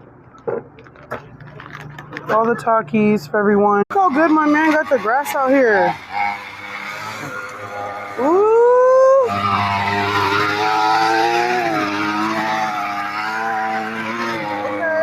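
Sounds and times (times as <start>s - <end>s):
engine revving: 3.9s - 15.0s.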